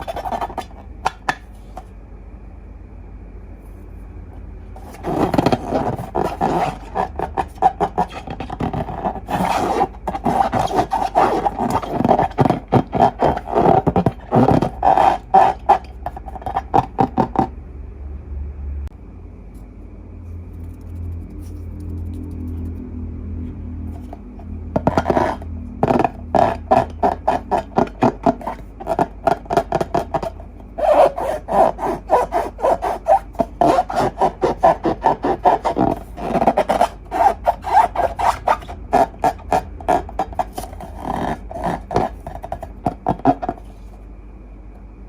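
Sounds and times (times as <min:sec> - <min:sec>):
slime squishing by hand: 0:24.0 - 0:43.8.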